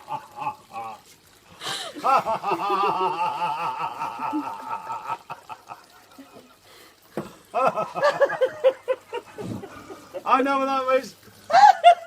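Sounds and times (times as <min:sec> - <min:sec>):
people laughing and giggling: 0:01.6 - 0:06.6, 0:07.6 - 0:10.3, 0:11.5 - 0:12.0.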